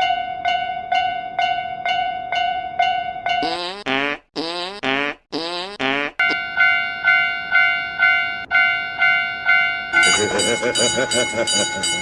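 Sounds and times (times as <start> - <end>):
level crossing warning bell: 6.2 - 12.0.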